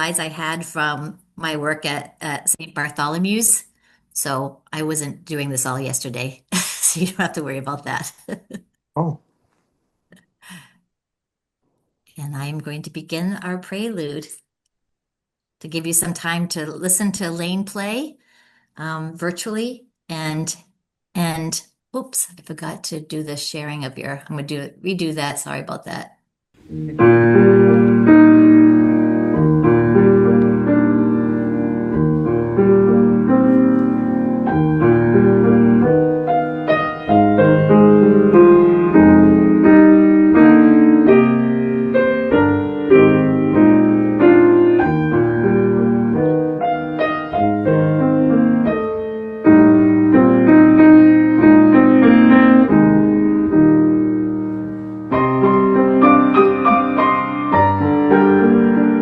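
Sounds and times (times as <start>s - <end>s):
solo piano playing: 26.6s - 59.0s.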